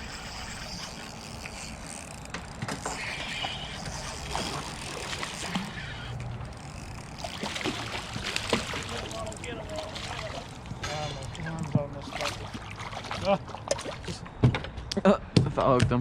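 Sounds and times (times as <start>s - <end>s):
water splashing and sloshing: 0.0s - 14.6s.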